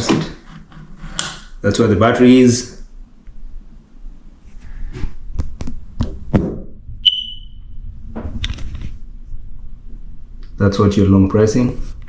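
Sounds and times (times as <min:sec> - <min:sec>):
smoke detector beep: 0:07.0 - 0:07.8.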